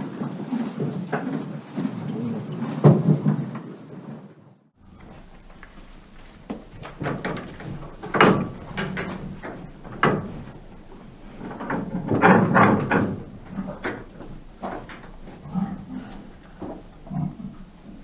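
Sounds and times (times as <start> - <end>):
farm animal rough calls: 4.8 - 18.0.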